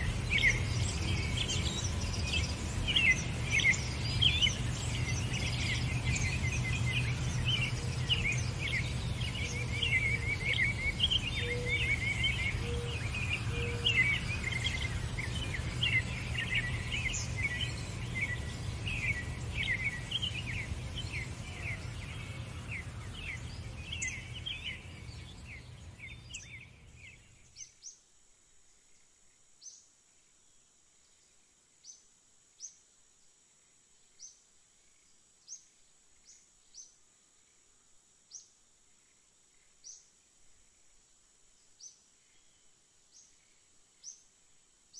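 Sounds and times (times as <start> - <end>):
small birds chirping: 0.0 - 28.1, 34.0 - 44.9.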